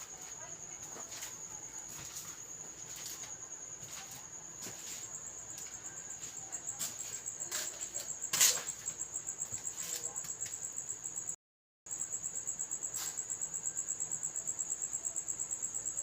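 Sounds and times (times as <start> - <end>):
high-pitched insect trill: 0.0 - 16.0.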